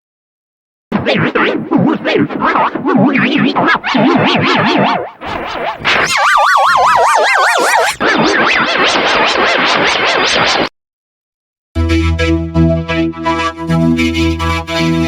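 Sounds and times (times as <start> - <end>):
wobbling tone sliding downward: 1.0 - 10.6
warbling processed noise: 1.0 - 10.7
keyboard synth music: 11.8 - 15.0.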